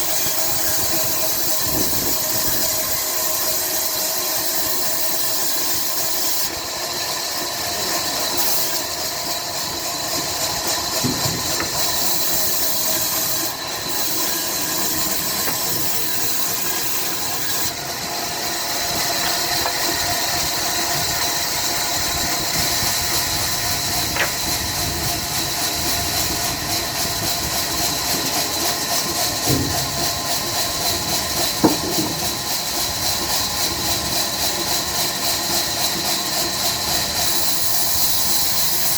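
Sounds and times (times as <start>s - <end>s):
sawmill machinery drone: 0.0s - 38.9s
short mechanical knocks: 10.7s - 12.9s, 23.9s - 24.8s, 29.3s - 32.4s.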